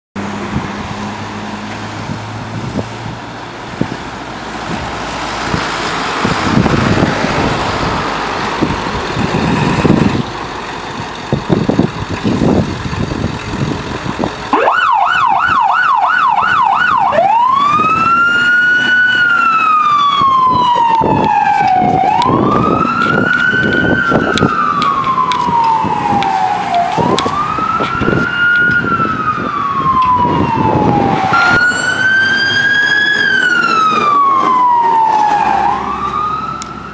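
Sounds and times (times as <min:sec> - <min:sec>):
vehicle engine and road noise: 0:00.2 - 0:36.9
electronic siren yelp and wail: 0:14.5 - 0:36.9.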